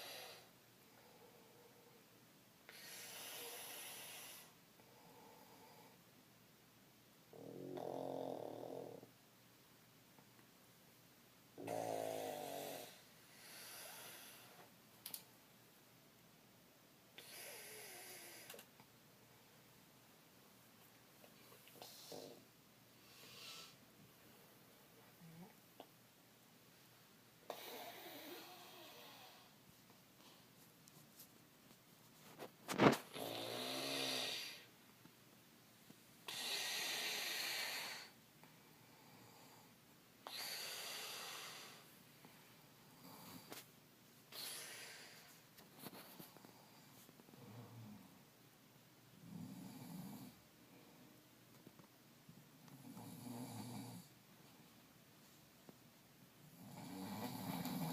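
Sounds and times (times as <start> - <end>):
man snoring: 7.4 - 9.1, 11.6 - 14.4, 27.5 - 29.4, 33.1 - 34.7, 36.3 - 38.1, 52.8 - 54.1, 56.6 - 57.9.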